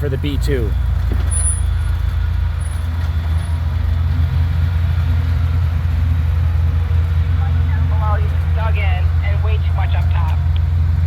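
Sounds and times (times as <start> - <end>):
truck engine deep rumble: 0.0 - 11.0.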